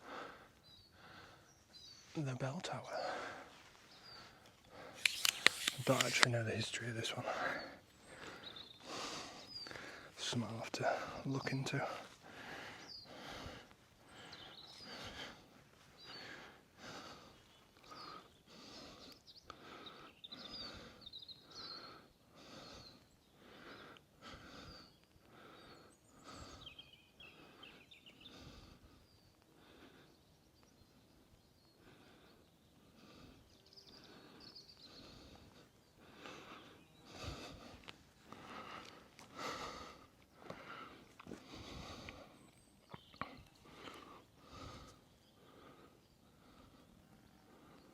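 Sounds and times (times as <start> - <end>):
birds chirping: 0.0 - 47.9
footsteps on a path: 37.3 - 42.3.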